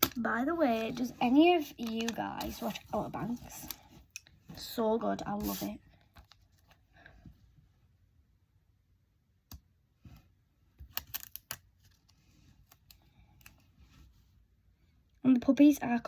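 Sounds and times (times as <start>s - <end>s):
paper rustling: 0.6s - 3.9s, 5.3s - 6.7s.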